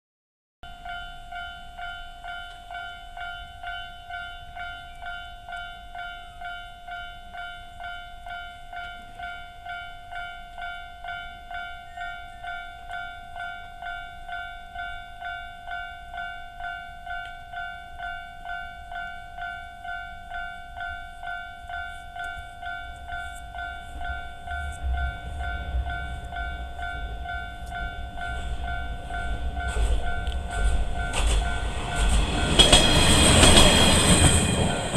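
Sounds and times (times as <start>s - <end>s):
train rumble approaching: 19.0s - 34.9s.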